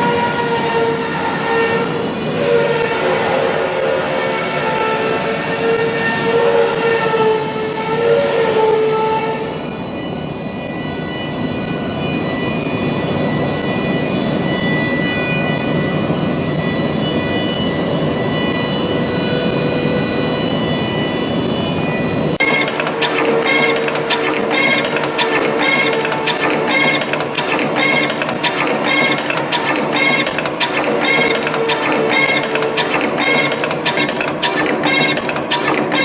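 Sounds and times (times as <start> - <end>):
machine mechanical clatter: 22.4 - 36.0
whining servo tones: 22.4 - 36.0.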